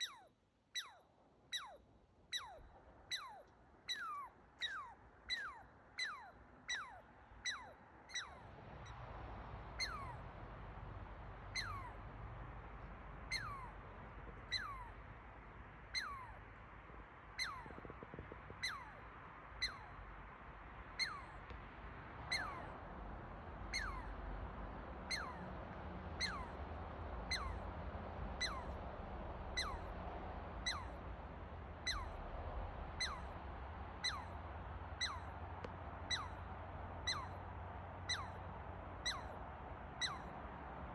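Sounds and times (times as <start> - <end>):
low steady rumble: 0.0 - 40.9
chipmunk chipping: 11.6 - 11.9, 13.3 - 13.7, 14.4 - 14.9, 15.9 - 16.3, 17.4 - 17.8, 18.6 - 18.9, 21.0 - 21.3, 22.3 - 22.6, 23.7 - 24.0, 25.1 - 25.4, 27.3 - 27.6, 28.4 - 28.7, 29.6 - 29.9, 30.6 - 31.0, 31.8 - 32.2, 33.0 - 33.3, 34.0 - 34.3, 35.0 - 35.3, 36.1 - 36.4, 37.0 - 37.4, 38.1 - 38.4, 39.0 - 39.3, 40.0 - 40.3.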